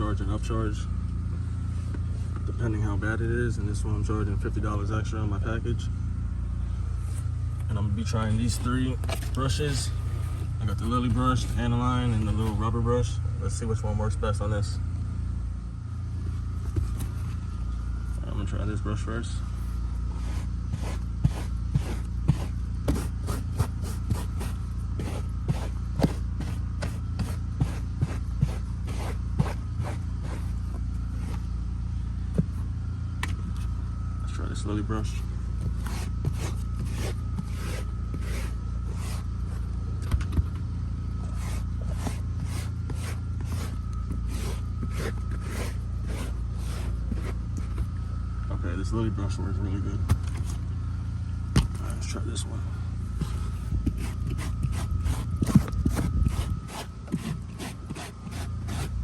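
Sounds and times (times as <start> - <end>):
steady low hum: 0.0 - 59.0
stiff brush scrubbing fabric: 8.1 - 12.7, 19.5 - 31.5, 35.0 - 39.7, 41.2 - 47.8, 53.2 - 59.0.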